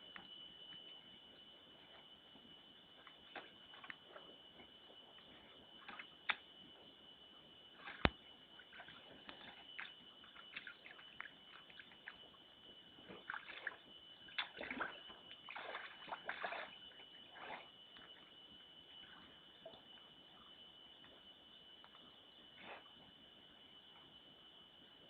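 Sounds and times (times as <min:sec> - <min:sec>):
bear splashing water: 0:14.4 - 0:16.8.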